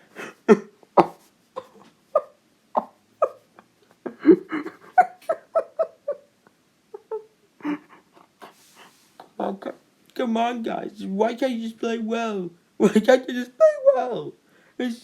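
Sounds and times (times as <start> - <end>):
person whimpering: 0.0 - 6.2, 7.0 - 9.8.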